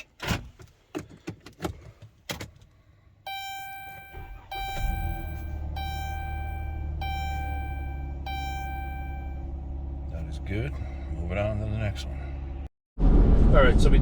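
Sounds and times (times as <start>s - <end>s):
car engine starting and idling: 2.2s - 12.7s
car warning chime dinging: 3.3s - 9.6s.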